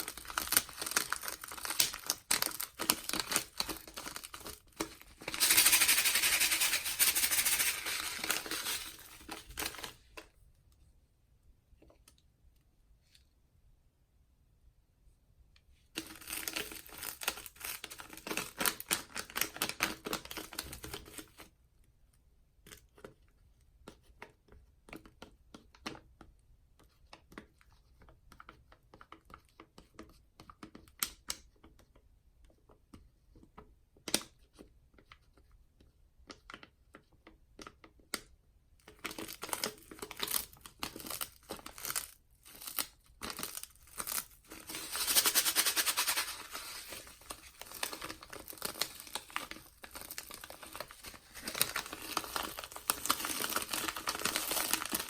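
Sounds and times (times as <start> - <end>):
soapy sponge squeezing crackle: 40.3 - 55.0.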